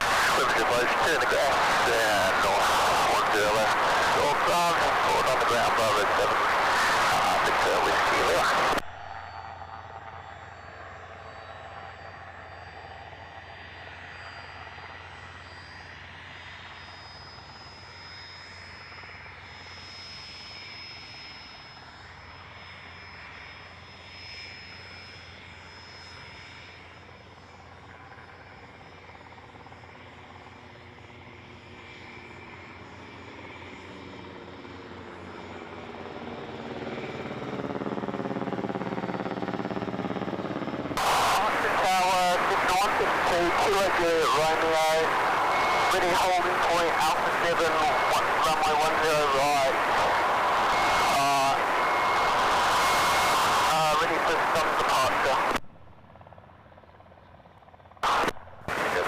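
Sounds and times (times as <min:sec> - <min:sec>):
high whine: 0:00.0 - 0:13.3, 0:40.9 - 0:55.7, 0:58.0 - 0:59.0
aircraft engine drone: 0:00.0 - 0:59.0.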